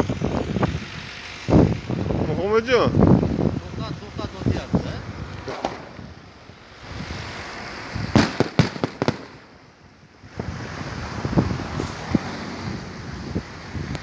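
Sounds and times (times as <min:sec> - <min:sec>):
fireworks bangs and cracks: 0:04.6 - 0:10.7.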